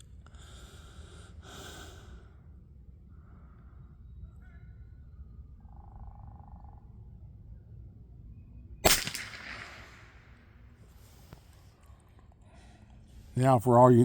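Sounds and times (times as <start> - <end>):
rifle shot with echo: 8.8 - 10.6.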